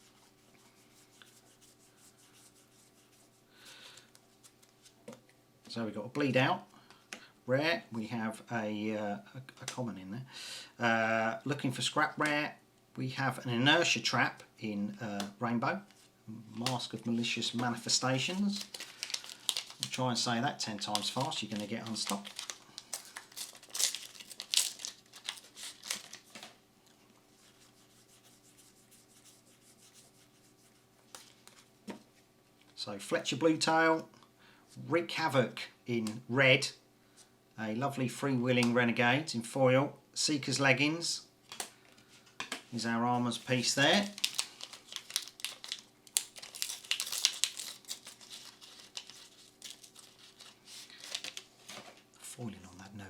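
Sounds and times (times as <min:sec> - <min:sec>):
faint steady hum: 0:00.0 - 0:53.0
cards rustling: 0:15.9 - 0:26.6, 0:42.6 - 0:52.0
foil wrapper crinkling: 0:17.5 - 0:26.6, 0:43.3 - 0:51.8.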